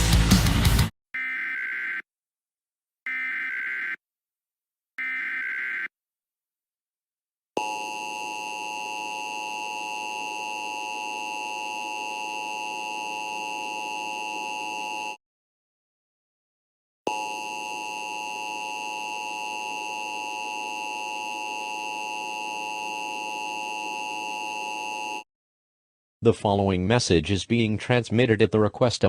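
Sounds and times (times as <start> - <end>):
heavy metal music: 0.0 - 0.9.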